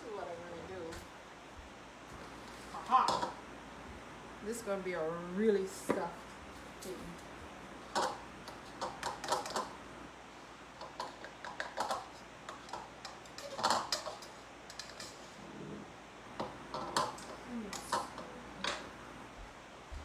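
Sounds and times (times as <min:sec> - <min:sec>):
utensils clicking against dishes: 0:07.9 - 0:09.8, 0:10.8 - 0:15.3, 0:16.4 - 0:19.0.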